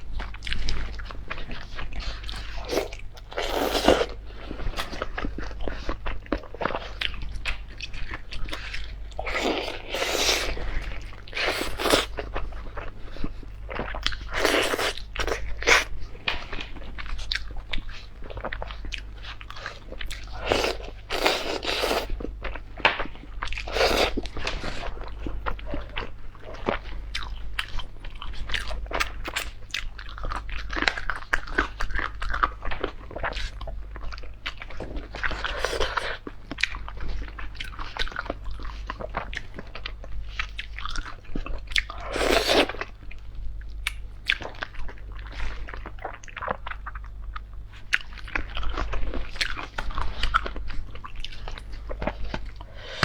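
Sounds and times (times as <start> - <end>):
faint low hum: 0.0 - 53.0
person chewing food: 0.1 - 53.0.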